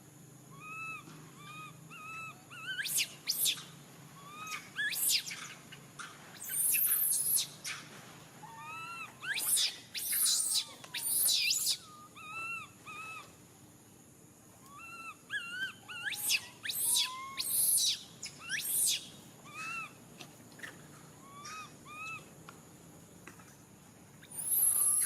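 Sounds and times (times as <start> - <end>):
baby monkey screaming: 0.5 - 5.5, 6.4 - 7.7, 8.4 - 13.3, 14.6 - 20.0, 21.2 - 22.3, 24.2 - 25.0
baby monkey whimpering: 0.6 - 3.4, 8.5 - 13.3, 14.7 - 19.9, 21.2 - 22.2.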